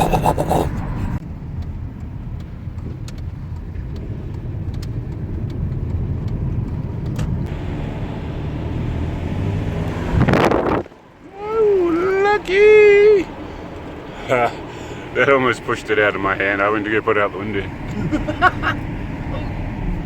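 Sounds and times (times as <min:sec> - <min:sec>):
engine and road rumble: 0:00.0 - 0:20.0.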